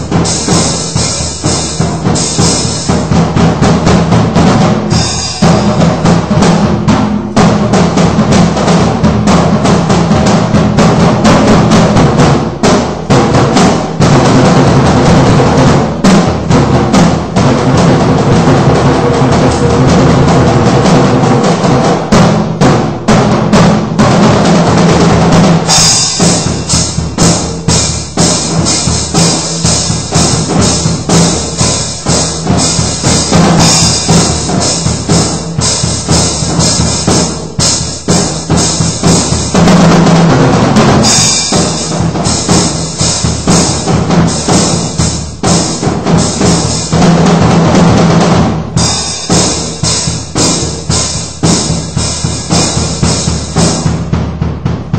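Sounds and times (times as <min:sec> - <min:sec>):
drum strokes: 0:00.0 - 0:54.9
cymbals ringing: 0:04.9 - 0:06.1, 0:25.6 - 0:36.0.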